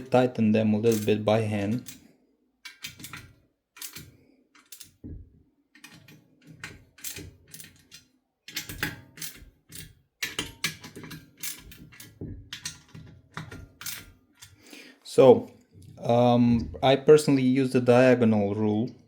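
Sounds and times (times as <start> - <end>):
hand tool metallic clicks on bolts: 0.9 - 2.0, 2.6 - 5.0, 5.8 - 14.6.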